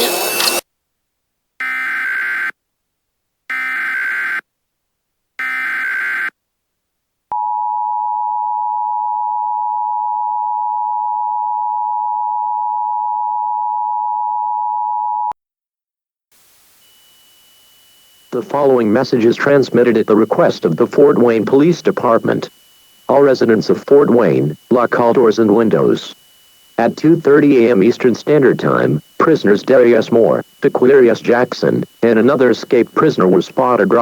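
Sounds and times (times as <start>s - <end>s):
digital data noise bursts: 0.0s - 0.6s, 16.9s - 34.0s
two-tone attention signal: 0.0s - 0.6s, 18.3s - 22.5s, 26.8s - 34.0s.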